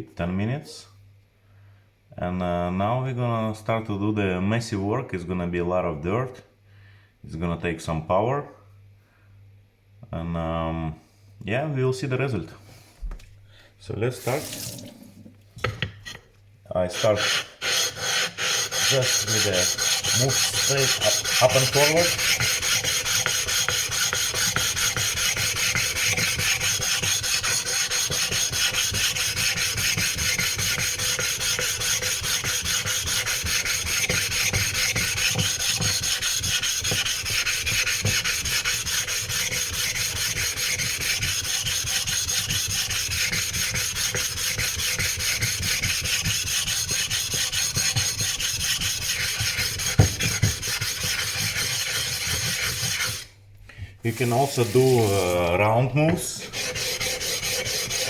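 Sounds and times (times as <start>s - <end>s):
stone scraping on whetstone: 15.6s - 16.3s, 16.9s - 53.3s, 54.1s - 58.0s.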